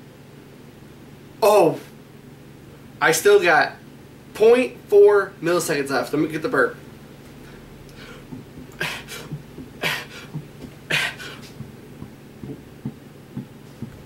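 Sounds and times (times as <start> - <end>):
man forcing a burp: 10.9 - 11.4.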